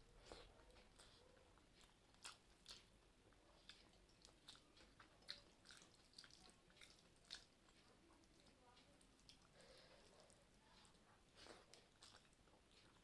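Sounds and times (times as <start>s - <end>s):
person chewing food: 0.0s - 13.0s.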